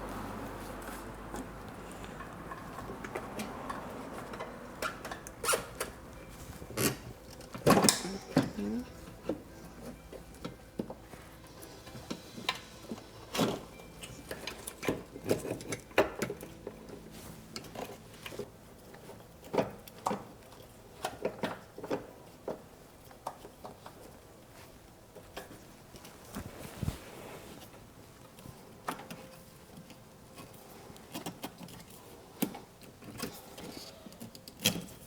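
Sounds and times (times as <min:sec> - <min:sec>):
tools clinking and knocking: 0:02.2 - 0:18.4.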